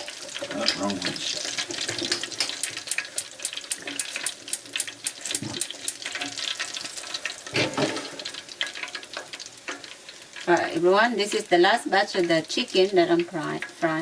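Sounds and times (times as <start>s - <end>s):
deep-frying sizzle with pops: 0.0s - 14.0s.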